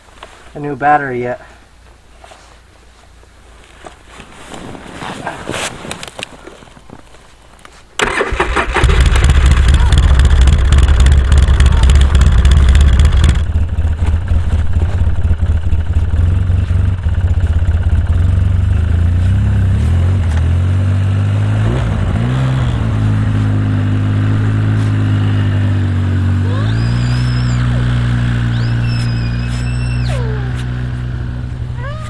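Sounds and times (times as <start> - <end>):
quad bike engine running: 8.0 - 32.0.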